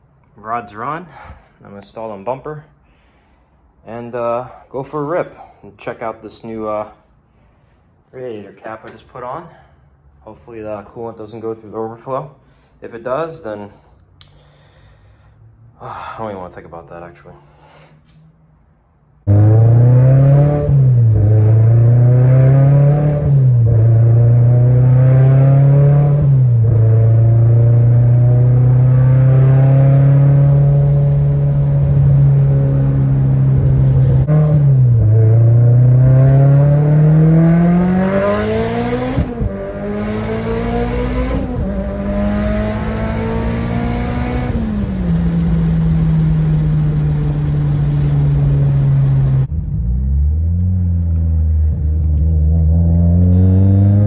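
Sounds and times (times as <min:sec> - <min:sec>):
car engine accelerating: 0:19.2 - 0:54.0.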